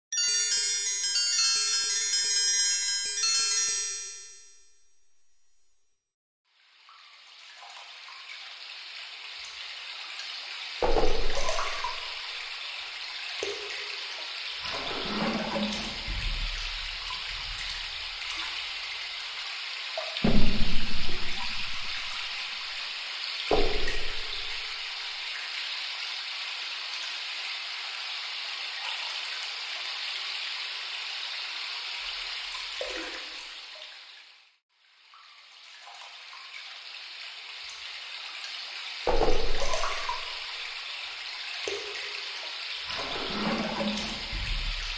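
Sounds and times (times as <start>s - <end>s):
running water rushing: 10.8s - 12.8s, 14.6s - 19.2s, 20.2s - 25.2s, 39.1s - 42.0s, 42.7s - 44.9s.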